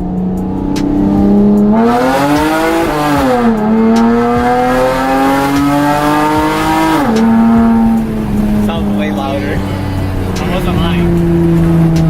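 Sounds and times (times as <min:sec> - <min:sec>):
car engine accelerating loudly: 0:00.0 - 0:12.0.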